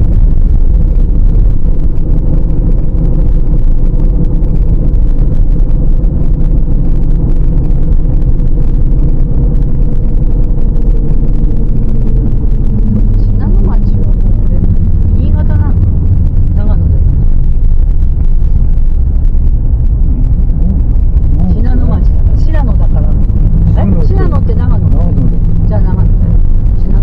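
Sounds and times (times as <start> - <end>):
vehicle engine and road noise: 0.0 - 27.0.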